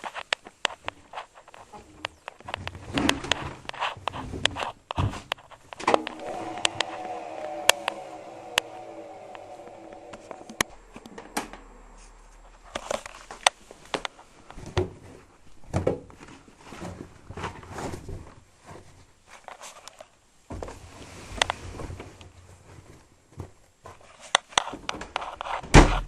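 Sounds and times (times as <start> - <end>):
faint low hum: 5.8 - 14.8.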